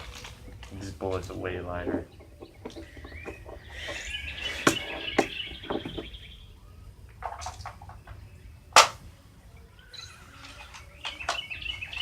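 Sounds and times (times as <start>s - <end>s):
birds chirping and warbling: 0.0s - 12.0s.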